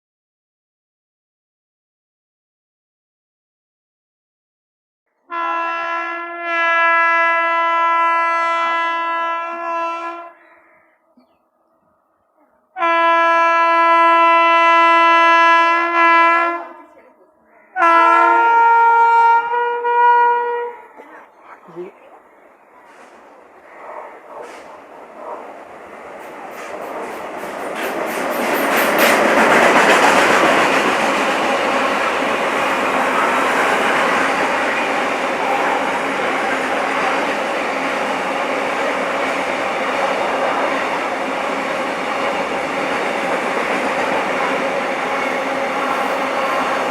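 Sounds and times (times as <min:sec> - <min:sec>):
freight train rumbling past: 0:05.3 - 0:10.4, 0:12.8 - 0:46.9
locomotive horn blast: 0:05.3 - 0:10.4, 0:12.8 - 0:17.1, 0:17.8 - 0:21.0, 0:44.2 - 0:46.9.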